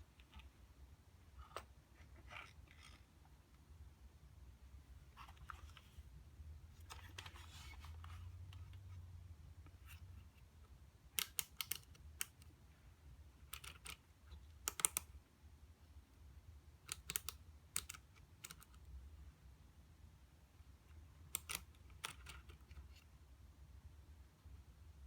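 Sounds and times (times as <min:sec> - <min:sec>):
low steady hum: 0:00.0 - 0:25.0
scratchy handling noise: 0:01.4 - 0:03.3, 0:06.7 - 0:09.0.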